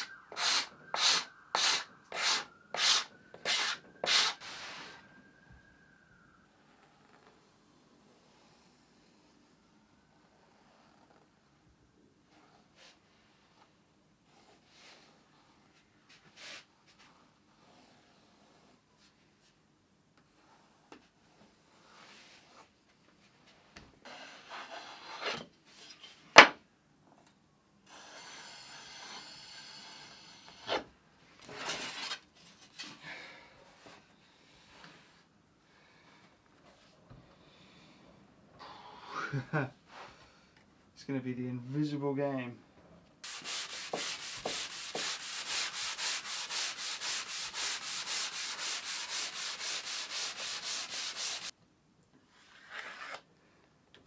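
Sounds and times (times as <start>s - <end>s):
wood scraping on wood: 0.0s - 4.6s, 43.2s - 51.5s
wood sanding strokes: 0.0s - 4.8s, 43.2s - 51.5s.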